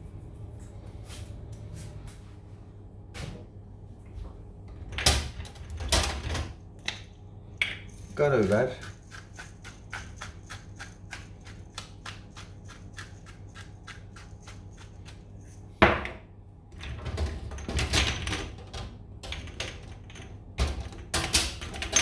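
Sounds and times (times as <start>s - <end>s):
pepper mill grinding clicks: 7.6s - 15.2s.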